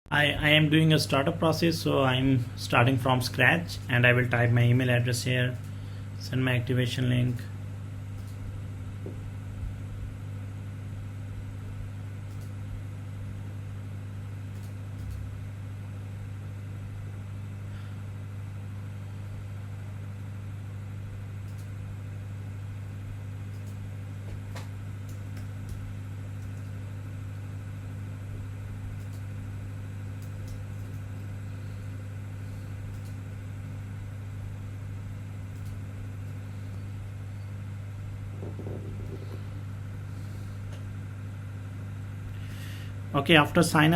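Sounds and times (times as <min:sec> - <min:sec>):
low electrical hum: 0:00.1 - 0:43.9
faint clicks: 0:12.3 - 0:12.6, 0:21.4 - 0:21.8, 0:29.0 - 0:29.3, 0:32.9 - 0:33.2.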